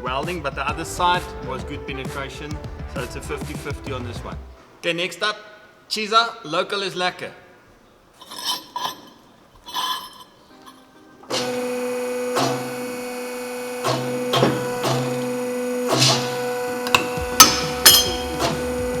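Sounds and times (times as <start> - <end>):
electric motor humming: 11.3 - 19.0
sharp metallic knocks: 15.9 - 19.0
light metal clinks: 16.9 - 18.5.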